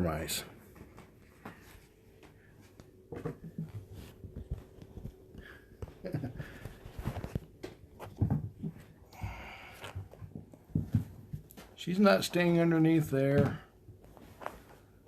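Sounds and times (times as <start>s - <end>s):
soft bumps and knocks: 3.1s - 9.4s, 10.0s - 11.8s
rustling: 14.0s - 15.0s.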